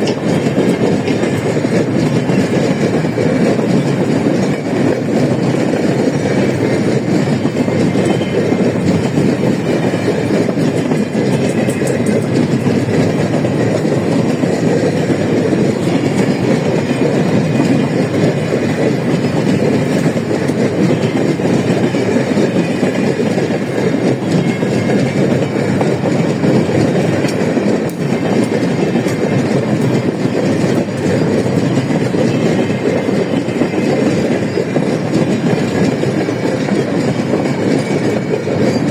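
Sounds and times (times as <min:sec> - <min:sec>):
steel wheels clattering on rails: 0:00.0 - 0:38.9.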